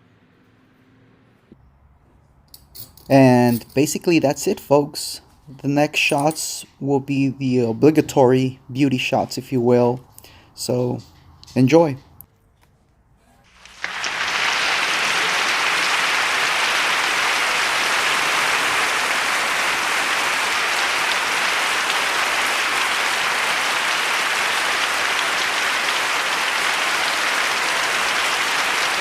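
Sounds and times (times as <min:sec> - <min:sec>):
applause: 0:13.5 - 0:29.0.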